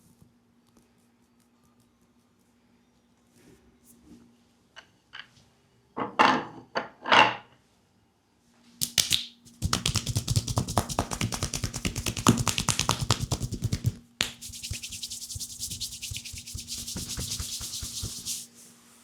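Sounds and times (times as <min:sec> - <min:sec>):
percussive massage tapping on leg: 0:08.8 - 0:18.4
swishing strokes: 0:09.5 - 0:18.8.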